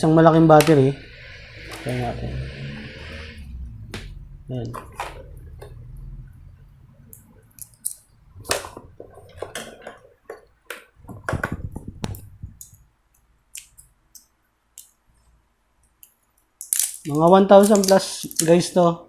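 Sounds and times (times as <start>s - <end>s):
plastic parts clicking and tapping: 7.1s - 12.8s.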